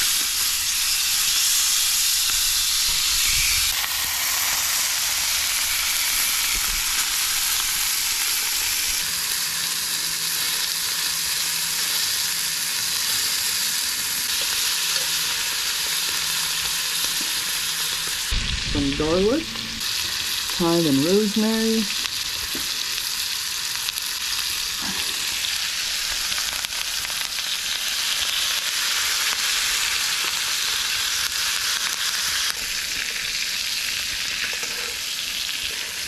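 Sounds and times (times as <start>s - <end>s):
steaks sizzling in a pan: 0.0s - 36.0s.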